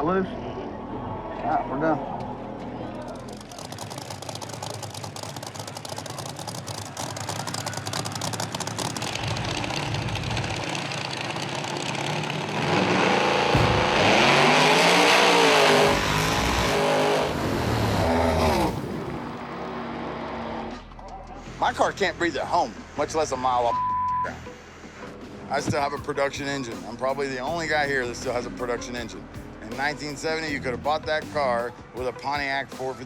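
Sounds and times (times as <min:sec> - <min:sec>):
racing car engine revving: 0:03.0 - 0:22.0.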